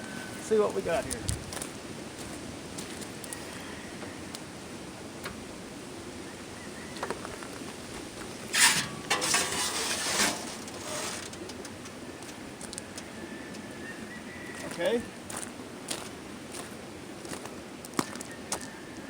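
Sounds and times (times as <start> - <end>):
scooter scraping metal rack: 8.2 - 12.0.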